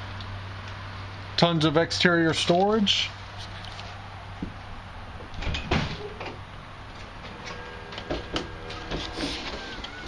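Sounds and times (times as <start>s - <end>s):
steady low hum: 0.0s - 10.0s
motorhome door clunking: 5.2s - 10.0s.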